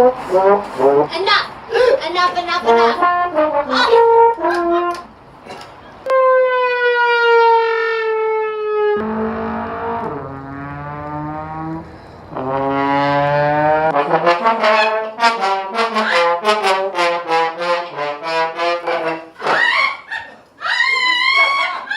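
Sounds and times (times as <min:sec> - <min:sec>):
trombone-like brass notes: 0:00.0 - 0:01.3, 0:02.6 - 0:05.1, 0:06.0 - 0:19.5.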